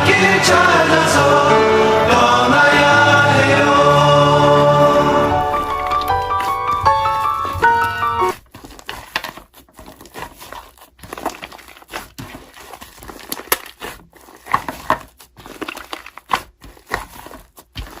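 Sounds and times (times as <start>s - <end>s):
slime squished by hand: 8.4s - 18.0s.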